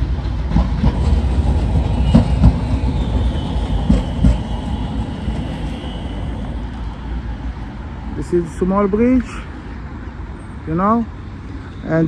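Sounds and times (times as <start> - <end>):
wheels clacking over rail joints: 0.0 - 5.7
train rumbling past: 0.0 - 12.0
faint high squeal: 1.9 - 7.0.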